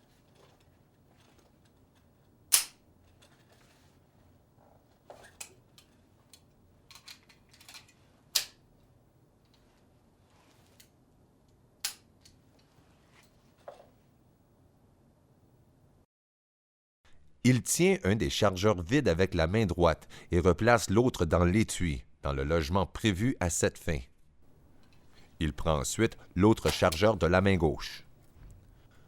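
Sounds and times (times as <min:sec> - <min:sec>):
pistol metallic clicks: 0:02.5 - 0:02.8.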